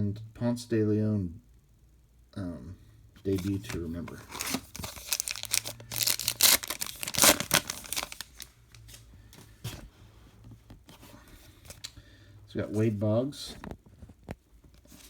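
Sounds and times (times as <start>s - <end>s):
card pack wrapper tearing: 3.3s - 8.5s
wrapper rustling: 3.3s - 9.0s.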